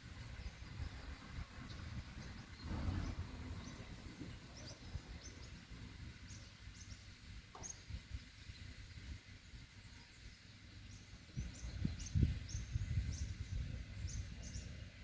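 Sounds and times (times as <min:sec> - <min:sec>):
wind rumble on microphone: 0:00.0 - 0:10.0, 0:10.6 - 0:15.0
birds chirping: 0:00.0 - 0:15.0.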